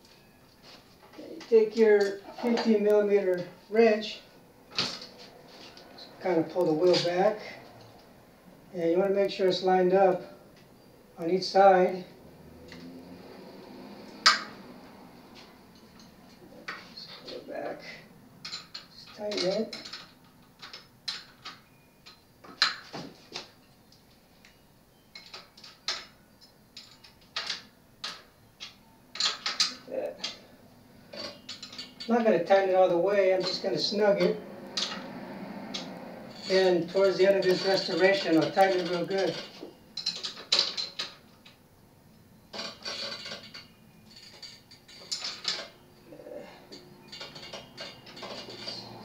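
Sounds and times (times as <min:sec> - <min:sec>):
metallic clicking and rattling of wheel: 0:09.0 - 0:23.7, 0:25.1 - 0:41.7, 0:42.4 - 0:49.0.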